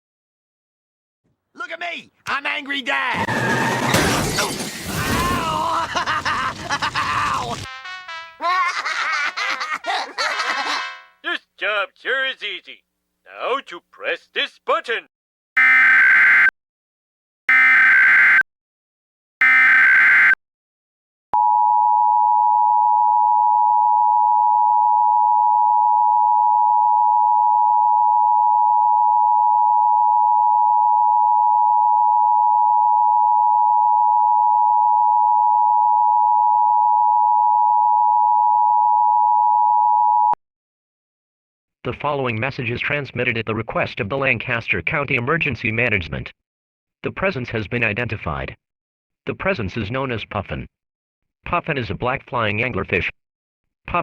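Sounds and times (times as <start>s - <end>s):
data burst squawks: 15.6s - 16.5s, 17.5s - 18.4s, 19.4s - 20.4s
two-tone alert tone: 17.5s - 18.4s, 19.4s - 20.4s.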